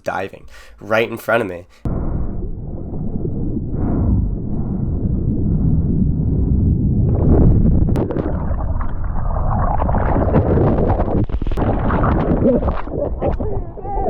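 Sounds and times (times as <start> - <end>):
low rumble of water: 1.9 - 14.0
wind on microphone: 1.9 - 14.0
sea water churning and splashing: 8.0 - 14.0.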